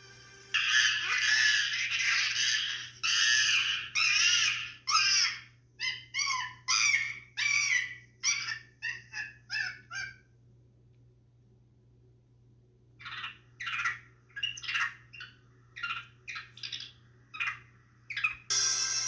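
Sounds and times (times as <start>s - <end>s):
monkey screeching: 0.5s - 10.2s.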